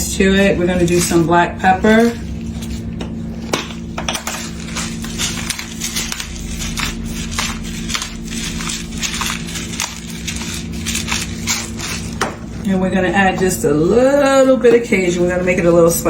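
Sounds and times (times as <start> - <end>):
pepper mill grinding: 3.4 - 15.4.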